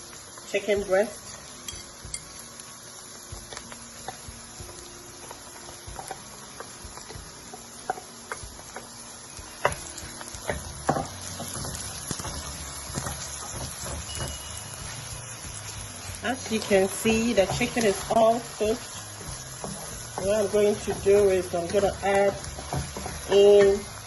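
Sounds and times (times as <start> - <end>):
utensil knocking cooking pot: 19.2 - 24.0.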